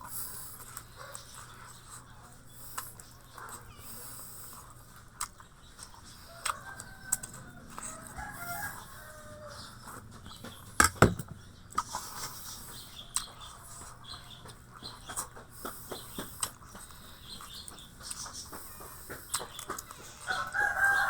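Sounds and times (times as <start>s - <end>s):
rooster crowing: 6.3s - 9.9s, 20.3s - 21.0s
sharp knocks: 10.8s - 11.4s.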